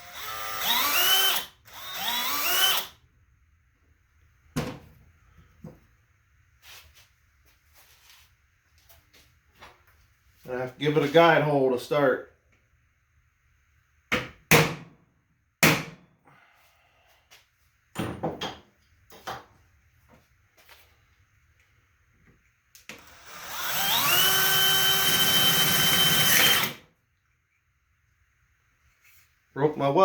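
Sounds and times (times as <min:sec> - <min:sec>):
electric drill drilling sheet metal: 0:00.0 - 0:03.0, 0:23.0 - 0:26.8.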